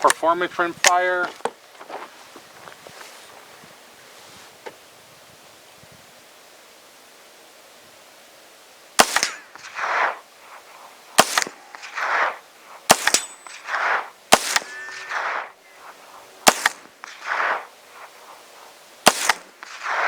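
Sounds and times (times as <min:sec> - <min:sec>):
echo from downrange: 0:00.0 - 0:01.6, 0:09.0 - 0:20.0
rifle shots: 0:09.0 - 0:18.4, 0:19.0 - 0:20.0.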